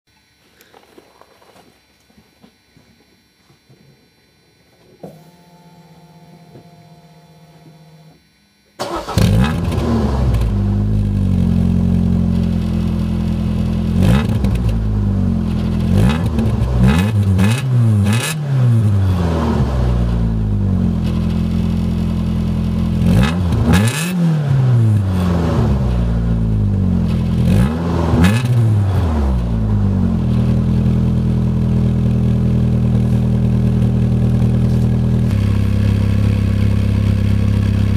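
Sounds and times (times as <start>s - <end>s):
faint steady hum: 0.1s - 8.8s
car engine idling and revving: 8.8s - 37.9s.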